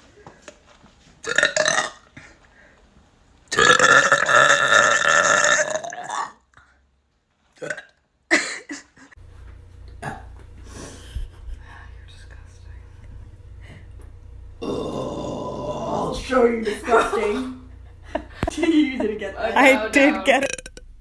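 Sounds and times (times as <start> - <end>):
woman burping: 1.2 - 2.1, 3.5 - 6.5, 7.6 - 8.9, 9.9 - 10.4, 14.6 - 16.0, 20.1 - 20.8.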